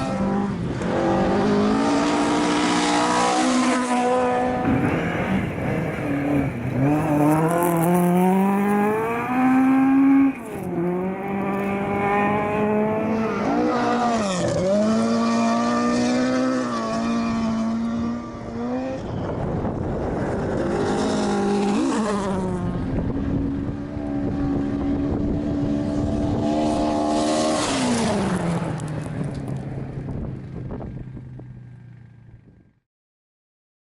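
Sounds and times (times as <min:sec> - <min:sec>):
rally car engine revving: 0:00.0 - 0:29.6.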